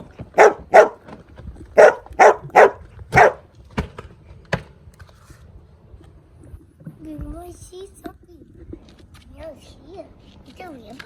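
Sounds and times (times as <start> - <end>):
dog barking: 0.4 - 1.0, 1.8 - 3.4.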